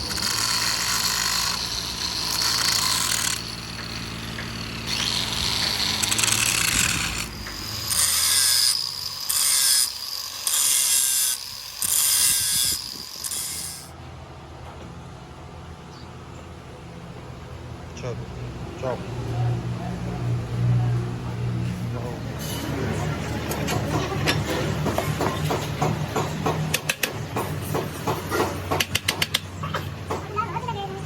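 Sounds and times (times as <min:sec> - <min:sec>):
low motor hum: 0:00.0 - 0:09.4.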